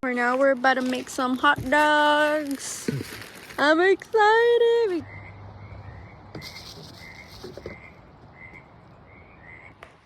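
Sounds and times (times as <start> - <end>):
frogs croaking: 4.9 - 10.0
hissing rustle: 6.4 - 7.7.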